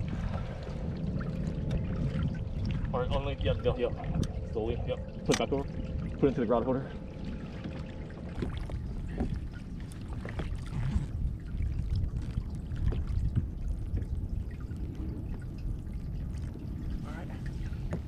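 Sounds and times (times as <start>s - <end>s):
water splashing against kayak hull: 0.0s - 6.3s, 7.1s - 18.0s
low rumble: 0.0s - 18.0s.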